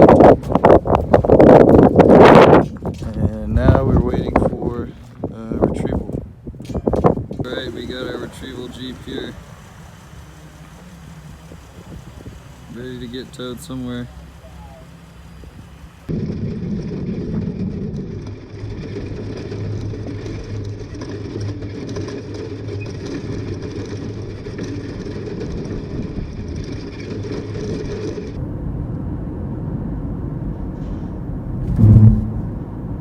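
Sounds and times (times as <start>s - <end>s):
road noise hiss: 0.0s - 16.1s
vehicle engine running: 6.9s - 28.4s, 31.6s - 32.9s.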